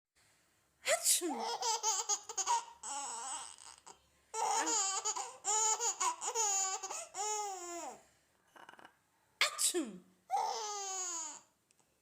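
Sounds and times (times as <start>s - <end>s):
baby laughing in squealing bursts: 1.4s - 8.0s.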